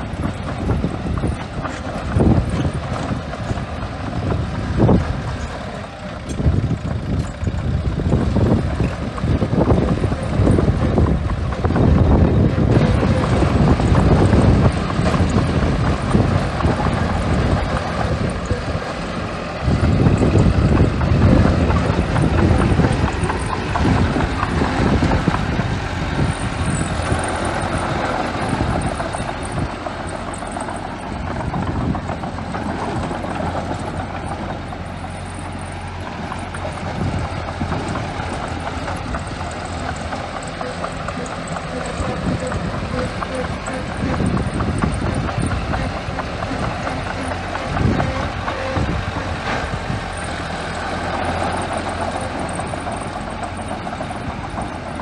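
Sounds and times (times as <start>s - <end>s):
bulldozer diesel engine: 0.0s - 55.0s.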